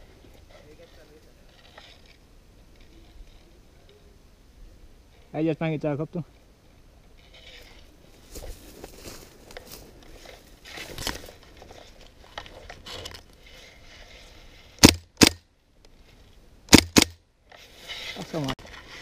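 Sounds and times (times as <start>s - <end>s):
airsoft gun shots: 14.8s - 15.4s, 16.7s - 17.2s.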